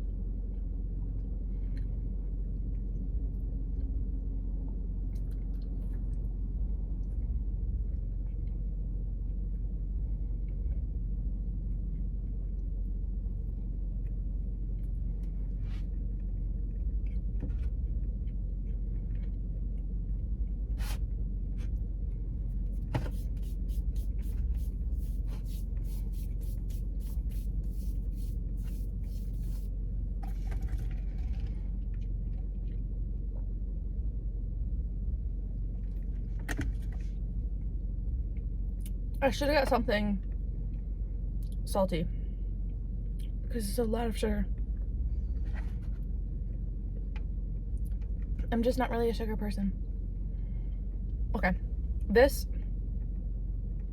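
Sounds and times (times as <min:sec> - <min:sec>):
car engine idling: 0:08.9 - 0:31.8.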